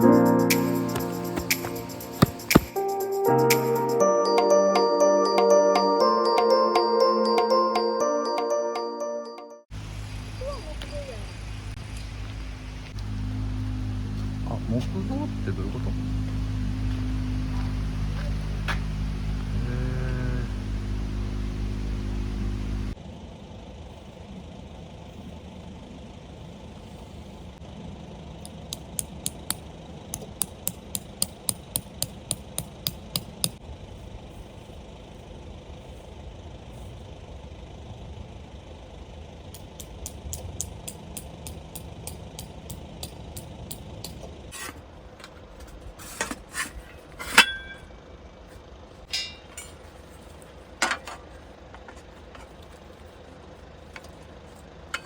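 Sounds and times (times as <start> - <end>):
loud ringing metal strike: 49.1 - 49.7
metal clinks and knocks: 49.1 - 50.1.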